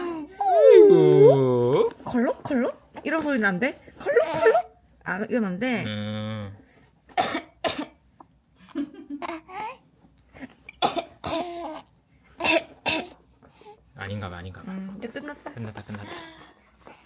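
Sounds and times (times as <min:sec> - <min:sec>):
baby cooing: 0:00.0 - 0:01.8, 0:04.0 - 0:04.7
woman coughing: 0:07.2 - 0:08.0, 0:10.8 - 0:11.6, 0:12.4 - 0:13.2.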